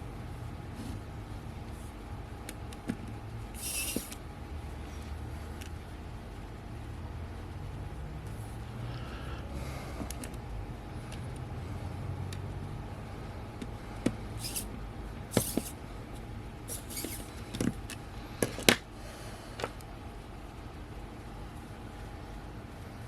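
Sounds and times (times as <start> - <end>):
low steady hum: 0.0 - 23.0
small parts and tools clicking: 14.4 - 14.7.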